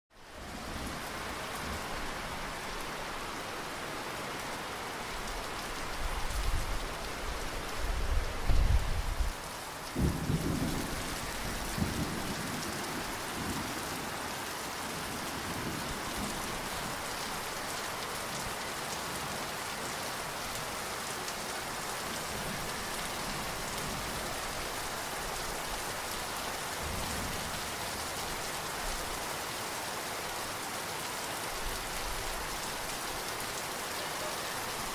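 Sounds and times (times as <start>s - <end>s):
steady rainfall: 0.1s - 34.9s
thunder rumbling: 10.0s - 13.6s.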